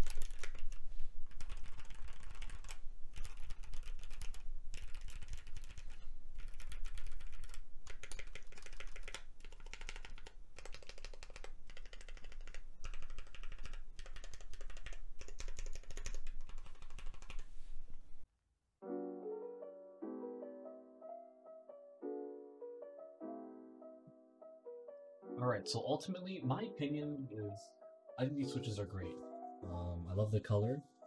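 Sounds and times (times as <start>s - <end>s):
fast mechanical keyboard typing: 0.0s - 17.5s
soft piano music: 18.8s - 31.0s.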